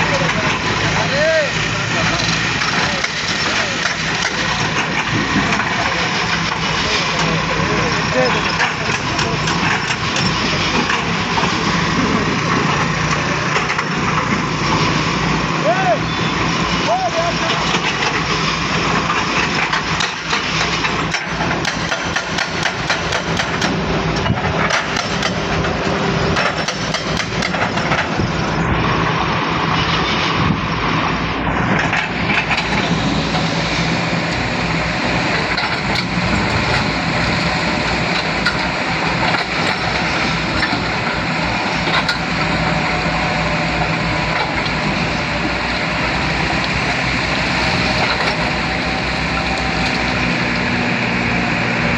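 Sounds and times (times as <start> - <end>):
diesel engine running: 0.0 - 51.9
sharp clicks and knocks: 19.6 - 25.8, 26.4 - 28.2, 35.4 - 42.5.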